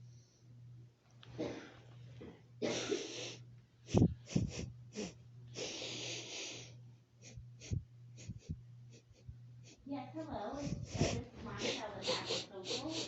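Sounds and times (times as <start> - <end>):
steady low hum: 0.0 - 13.0
puppy sniffing: 3.1 - 9.8, 10.5 - 13.0.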